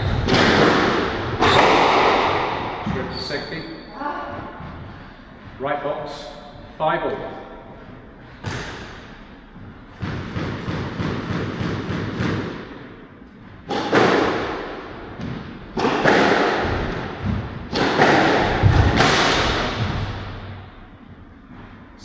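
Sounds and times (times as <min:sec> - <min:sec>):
rackets striking squash ball: 0:00.0 - 0:22.0
ball thudding against walls: 0:13.6 - 0:20.4.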